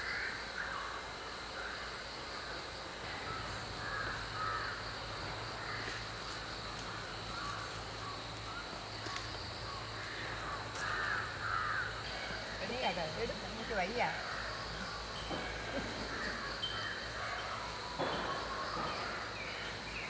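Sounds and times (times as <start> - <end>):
crows cawing: 0.0 - 1.0, 3.1 - 20.0.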